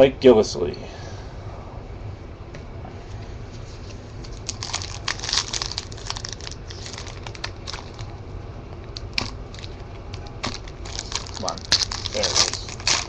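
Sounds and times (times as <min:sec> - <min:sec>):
faint low hum: 0:00.0 - 0:13.0
foil wrapper crinkling: 0:04.2 - 0:08.2, 0:08.9 - 0:13.0.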